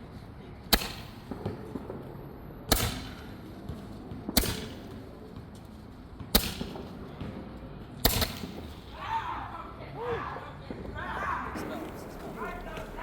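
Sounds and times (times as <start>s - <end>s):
firework shots: 0.7s - 5.2s, 6.3s - 9.0s.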